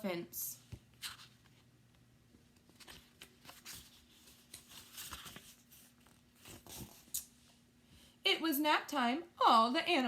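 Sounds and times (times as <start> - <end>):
low room hum: 0.0 - 10.0
paper rustling: 2.6 - 7.2.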